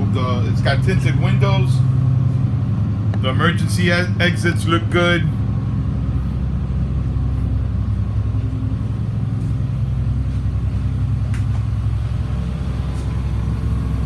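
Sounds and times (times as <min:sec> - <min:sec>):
bus engine idling: 0:00.0 - 0:14.0.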